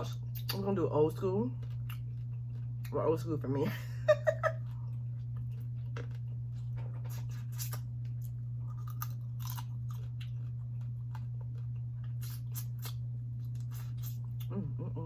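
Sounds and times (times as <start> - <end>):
appliance humming: 0.0 - 15.0
chewing: 1.5 - 3.0, 4.6 - 14.5.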